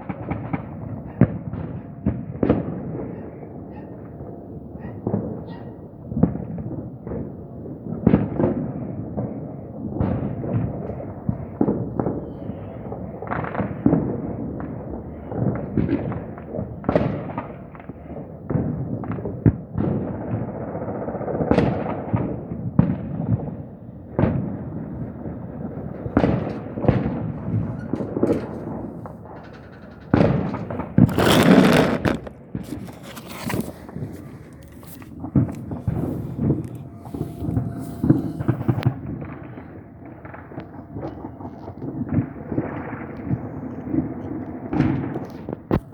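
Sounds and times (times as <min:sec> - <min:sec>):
sharp echoing bangs and pops: 0:13.2 - 0:45.9.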